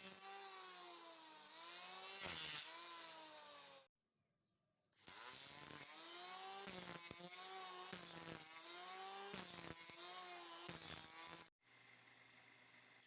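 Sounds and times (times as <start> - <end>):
saw cutting wood: 0.0 - 3.9, 5.0 - 11.5.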